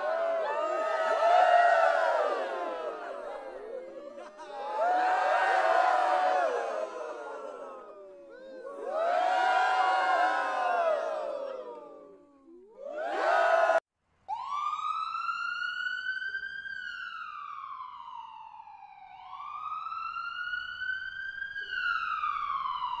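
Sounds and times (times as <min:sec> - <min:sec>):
crowd cheering: 0:00.0 - 0:13.8.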